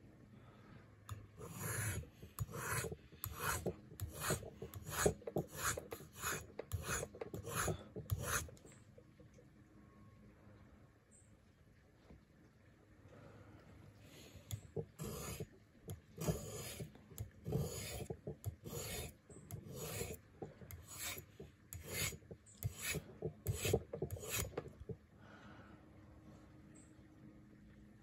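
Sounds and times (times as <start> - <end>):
knife scraping on sharpening stone: 1.4 - 8.6, 15.0 - 15.4, 16.2 - 24.7.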